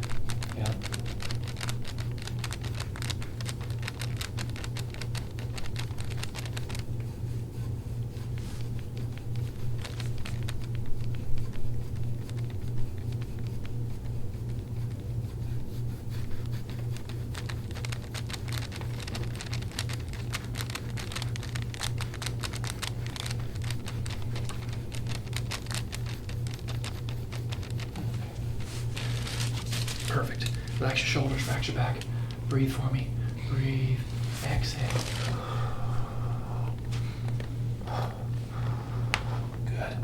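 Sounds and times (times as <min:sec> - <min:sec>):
steady low hum: 0:00.0 - 0:40.0
hands rustling on back: 0:17.0 - 0:39.7.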